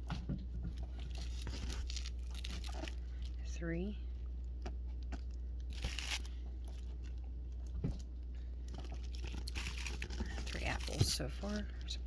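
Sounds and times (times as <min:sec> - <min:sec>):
steady low hum: 0:00.0 - 0:12.0
packaging rustle: 0:01.0 - 0:03.4, 0:08.7 - 0:11.2.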